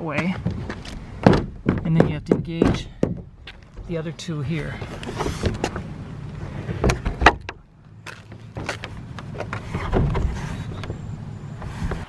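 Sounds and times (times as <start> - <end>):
plastic panel knocking: 1.2 - 3.3.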